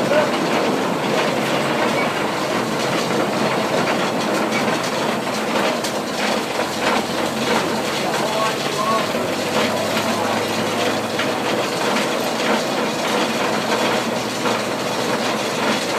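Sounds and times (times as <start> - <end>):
sawmill machinery clattering: 0.0 - 15.9.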